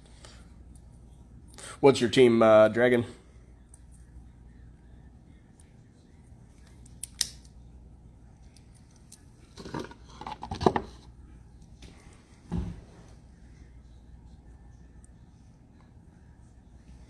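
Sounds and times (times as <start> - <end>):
rustling and scraping: 9.4 - 11.1.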